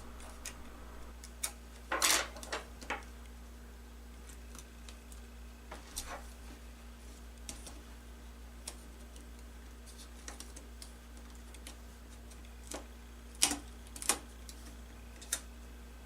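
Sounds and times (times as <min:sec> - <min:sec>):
small parts clicking and tapping: 0:10.2 - 0:15.5.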